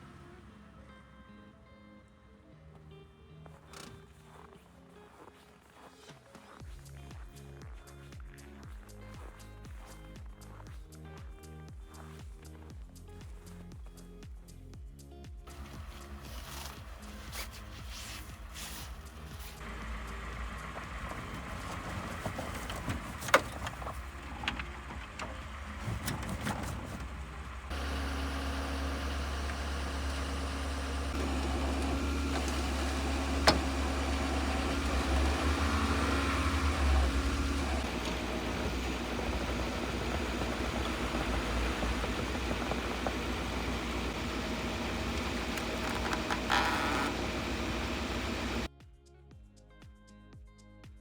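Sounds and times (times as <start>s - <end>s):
car engine running: 15.5s - 48.7s
low hum: 15.5s - 48.7s
sharp clicks and rustles: 15.5s - 48.7s.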